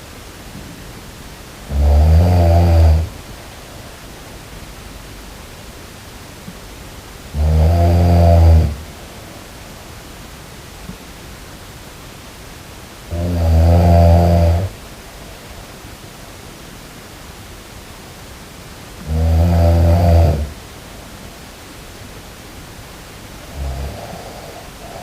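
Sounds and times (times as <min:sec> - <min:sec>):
steady hiss: 0:00.0 - 0:25.0
person snoring: 0:01.7 - 0:03.1, 0:07.3 - 0:08.8, 0:13.1 - 0:14.7, 0:19.0 - 0:20.5, 0:23.4 - 0:25.0.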